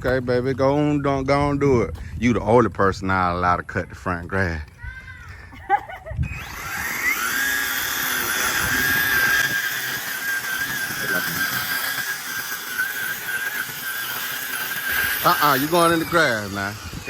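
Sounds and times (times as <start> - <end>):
lawn edger high whine: 5.3 - 17.0.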